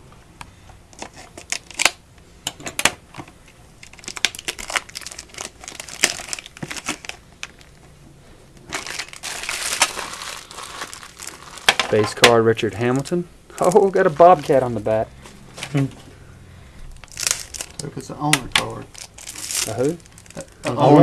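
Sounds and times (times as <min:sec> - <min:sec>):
plastic and paper packaging crinkling: 0:01.0 - 0:02.0, 0:03.8 - 0:07.8, 0:08.6 - 0:16.0, 0:17.0 - 0:20.8.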